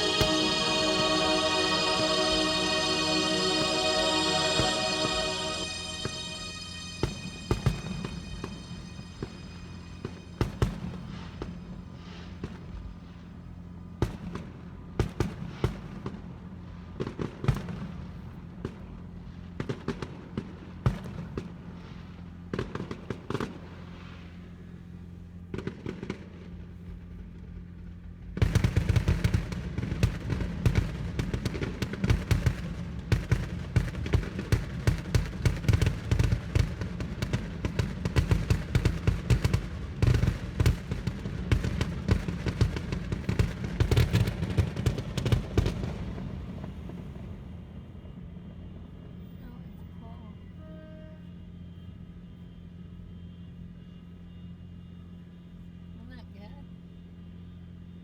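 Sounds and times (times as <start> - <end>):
low hum: 0.0 - 11.7
fireworks bangs and crackling: 28.4 - 46.3.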